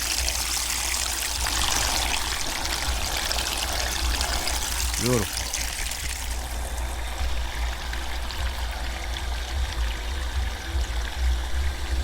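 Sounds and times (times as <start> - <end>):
water running from a hose: 0.0 - 12.0
low steady rumble: 6.4 - 12.0.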